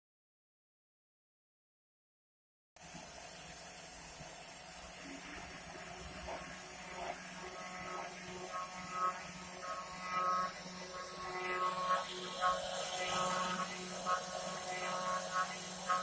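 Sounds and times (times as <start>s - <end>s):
router motor hum: 4.1s - 16.0s.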